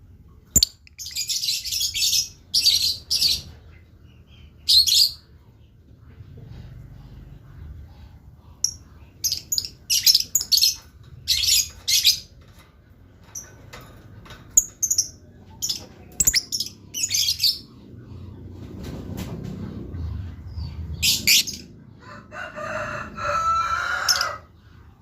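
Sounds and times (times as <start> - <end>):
lovebird chirping and screeching: 9.3 - 12.3, 15.6 - 17.7.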